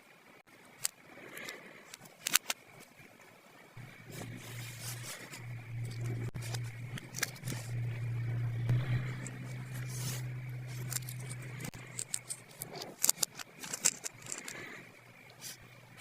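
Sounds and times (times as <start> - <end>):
plastic toy pieces clicking: 1.9 - 2.6, 10.8 - 14.6
low steady hum: 3.7 - 16.0.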